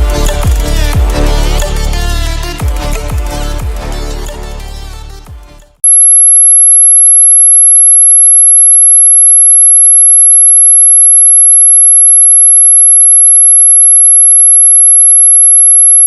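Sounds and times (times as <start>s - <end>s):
high-pitched electronic tone: 5.8s - 16.0s.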